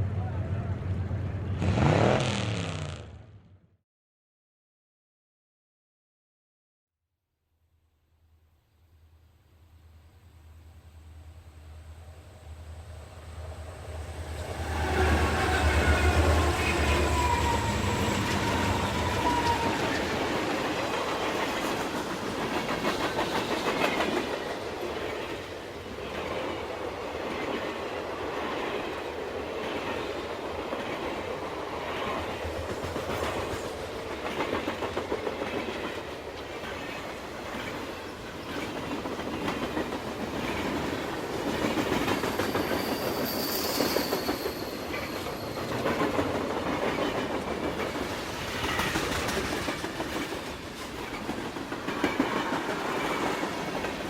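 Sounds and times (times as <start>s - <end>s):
vehicle rumbling: 0.0s - 3.6s
brief high squeal: 42.4s - 45.7s.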